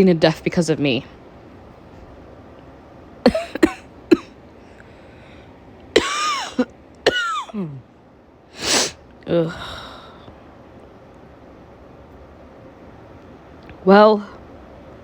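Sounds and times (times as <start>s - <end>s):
woman coughing: 3.3s - 4.3s, 6.0s - 7.8s.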